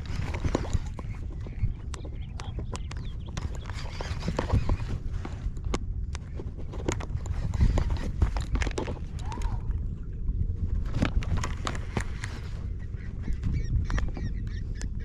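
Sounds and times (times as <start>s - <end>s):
low rumble: 4.7s - 14.6s.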